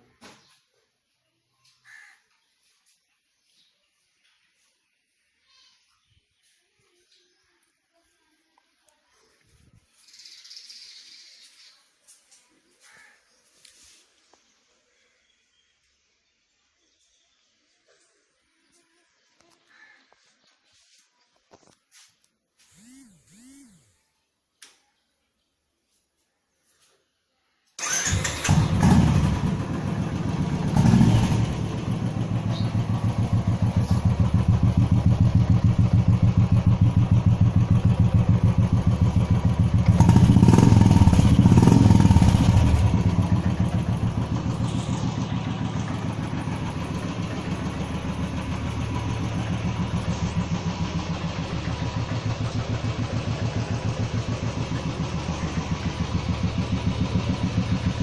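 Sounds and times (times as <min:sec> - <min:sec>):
motorcycle engine idling and revving: 0:22.6 - 0:24.0, 0:27.8 - 0:58.0.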